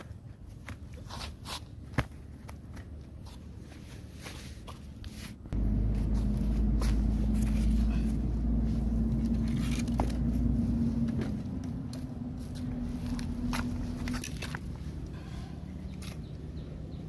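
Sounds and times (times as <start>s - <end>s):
engine running steadily: 5.4s - 17.0s.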